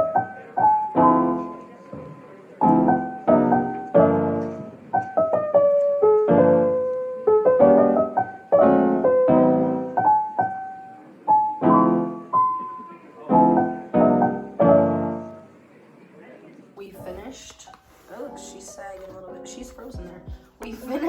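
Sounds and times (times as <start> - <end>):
solo piano music: 0.0 - 15.7.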